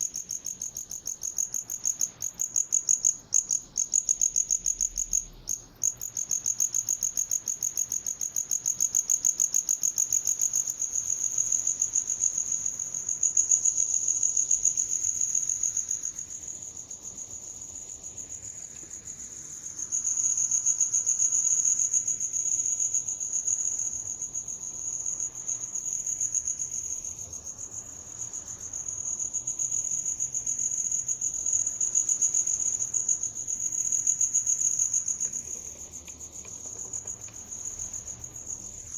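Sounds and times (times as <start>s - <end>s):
cricket trilling: 19.9s - 38.9s.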